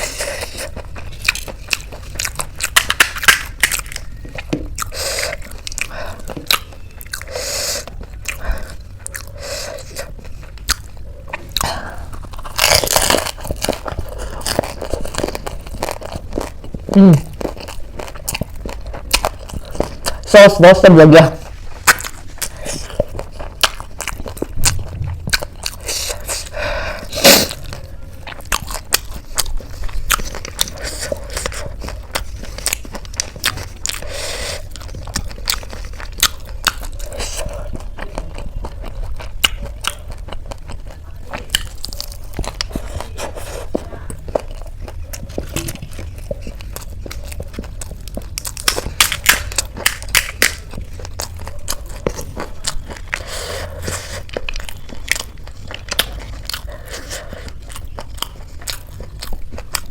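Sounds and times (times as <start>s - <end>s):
crunchy snacks being chewed: 0.0s - 20.4s, 21.4s - 59.9s.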